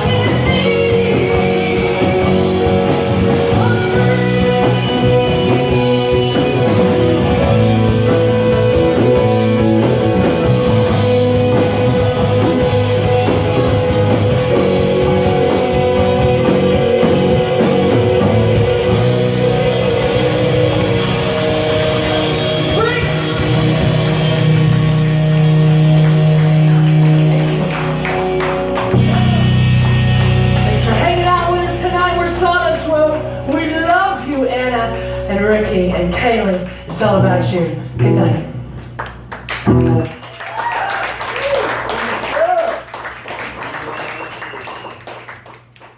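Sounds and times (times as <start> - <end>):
person singing: 0.0 - 6.9
drum kit: 0.0 - 40.6
guitar: 0.0 - 45.6.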